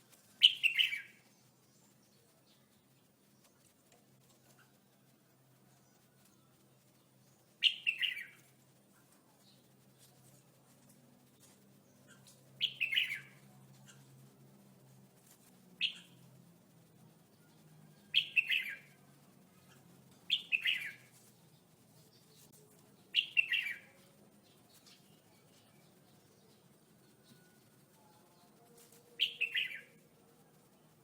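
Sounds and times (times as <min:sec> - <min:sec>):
bulbul warbling song: 0:00.4 - 0:01.2, 0:07.6 - 0:08.4, 0:12.6 - 0:13.4, 0:18.1 - 0:18.9, 0:20.2 - 0:21.1, 0:23.1 - 0:24.0, 0:29.1 - 0:30.0.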